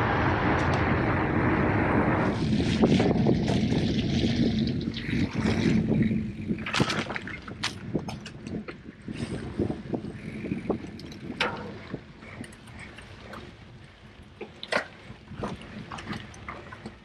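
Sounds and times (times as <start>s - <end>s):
rushing noise: 0.0s - 5.7s
engine running: 0.0s - 7.8s.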